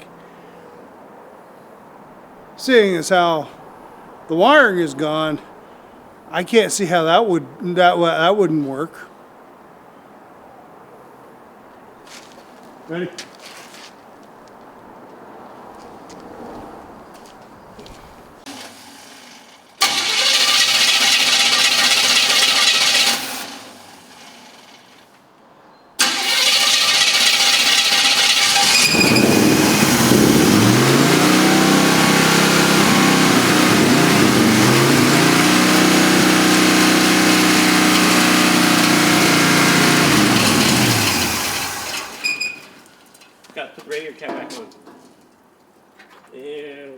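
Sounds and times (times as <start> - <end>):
truck engine running: 18.4 - 25.1, 26.0 - 42.8
starter motor cranking: 18.5 - 25.1, 26.0 - 42.9.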